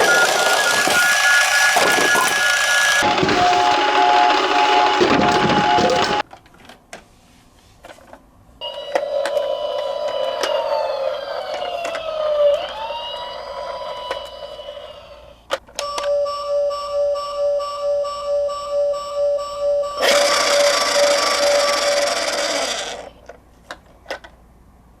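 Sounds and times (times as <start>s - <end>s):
emergency vehicle sirens: 0.0s - 6.2s, 8.6s - 22.2s
pulsing two-tone beep: 0.0s - 6.2s, 15.8s - 21.6s.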